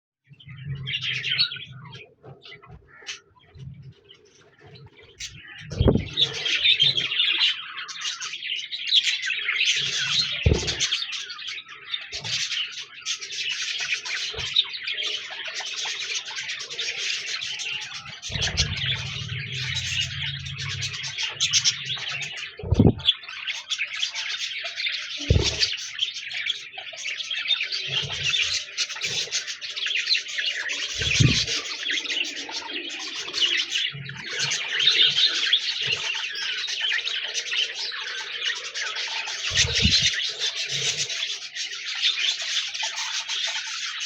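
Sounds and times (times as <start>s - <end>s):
budgerigars chattering: 4.4s - 44.0s
short low thumps: 5.7s - 6.2s, 22.6s - 23.1s, 25.3s - 25.7s.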